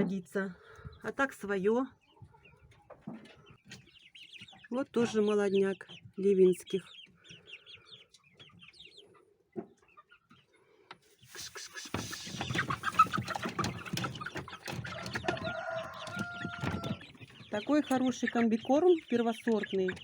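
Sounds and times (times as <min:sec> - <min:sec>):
chickens peeping and clucking: 0:00.0 - 0:20.0
scratchy noise: 0:11.2 - 0:13.5
cockerel crowing: 0:14.9 - 0:17.0.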